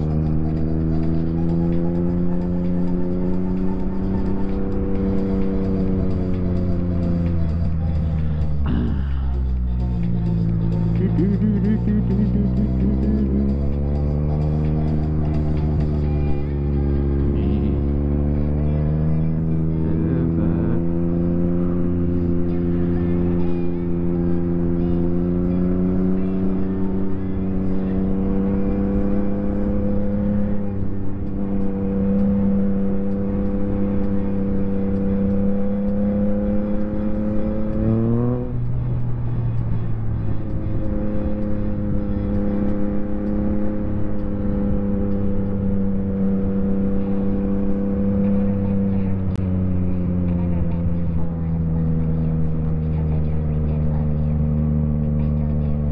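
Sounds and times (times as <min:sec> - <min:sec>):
motorcycle engine revving: 0:00.0 - 0:55.9.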